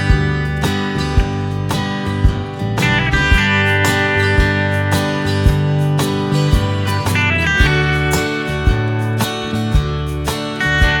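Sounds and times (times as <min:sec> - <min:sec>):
guitar-led instrumental music: 0:00.0 - 0:11.0.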